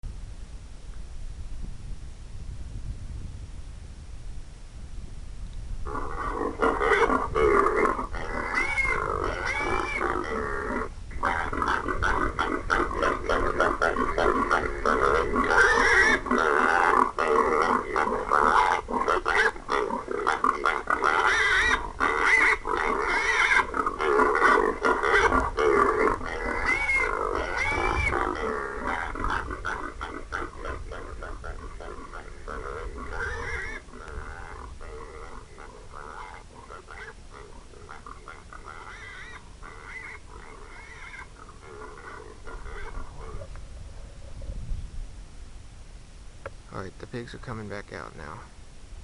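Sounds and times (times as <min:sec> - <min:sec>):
hog squeals from game call: 0:08.2 - 0:10.0, 0:26.3 - 0:31.6, 0:38.7 - 0:41.3.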